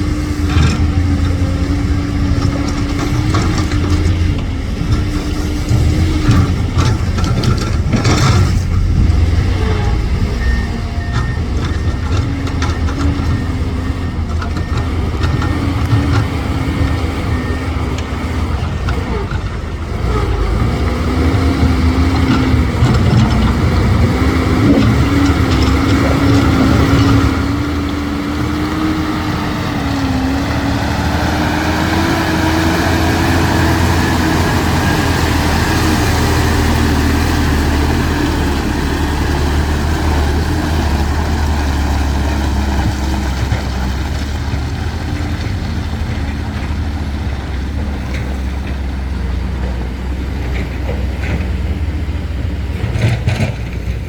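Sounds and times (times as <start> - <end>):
heavy diesel engines rumbling: 0.0 - 54.0
backup alarm beeping: 8.8 - 14.9.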